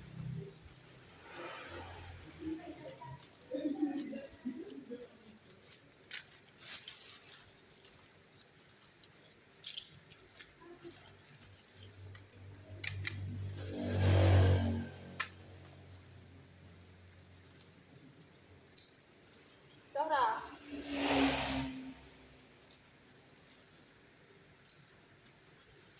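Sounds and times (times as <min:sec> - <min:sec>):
packages being handled: 0:00.0 - 0:14.6.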